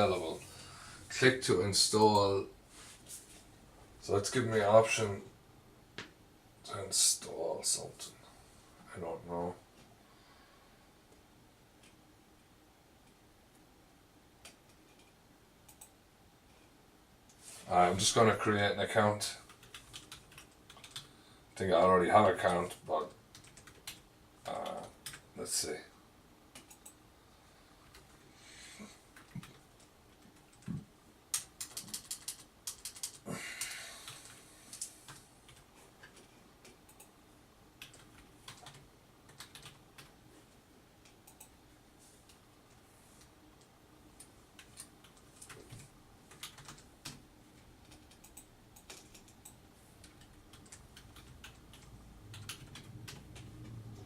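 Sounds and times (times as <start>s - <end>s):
keyboard typing: 14.4s - 15.9s, 19.4s - 21.1s, 22.6s - 25.3s, 26.5s - 27.0s, 29.1s - 37.1s, 37.8s - 40.2s, 41.0s - 41.6s, 44.2s - 54.0s.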